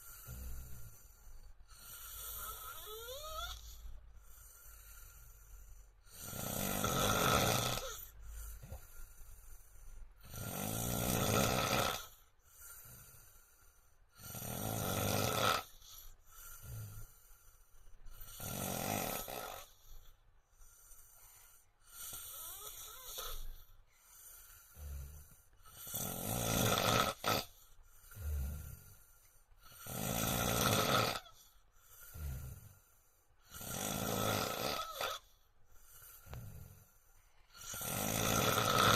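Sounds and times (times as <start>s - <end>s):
man snoring loudly: 0.0s - 3.8s, 4.5s - 8.8s, 10.2s - 13.4s, 14.1s - 17.2s, 18.1s - 19.9s, 21.9s - 23.6s, 24.4s - 29.0s, 29.6s - 32.8s, 33.4s - 35.3s, 37.5s - 38.9s
quiet breathing: 0.0s - 11.0s, 12.0s - 14.5s, 15.2s - 18.6s, 19.2s - 30.6s, 31.2s - 38.9s.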